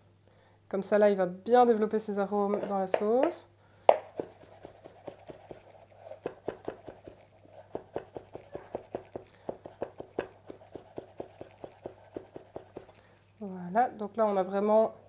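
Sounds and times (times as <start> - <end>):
knife chopping on cutting board: 2.6 - 12.9.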